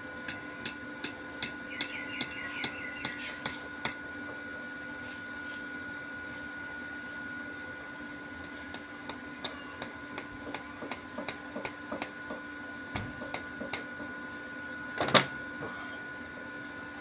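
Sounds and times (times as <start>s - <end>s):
hammer tapping on steel: 0.0s - 4.0s
steady background hum: 0.0s - 17.0s.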